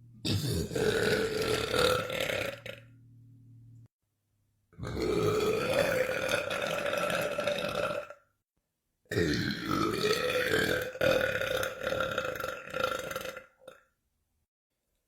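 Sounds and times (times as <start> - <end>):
man belching: 0.2 - 2.8, 4.8 - 8.2, 9.1 - 13.8.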